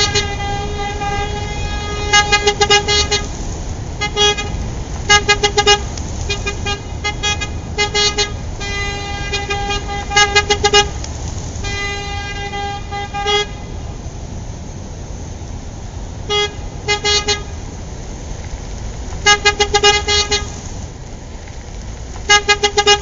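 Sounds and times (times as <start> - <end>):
car horn honking: 0.0 - 3.3, 4.0 - 11.0, 11.6 - 13.9, 16.3 - 17.6, 19.1 - 20.6, 22.2 - 23.0
low traffic rumble: 0.0 - 23.0.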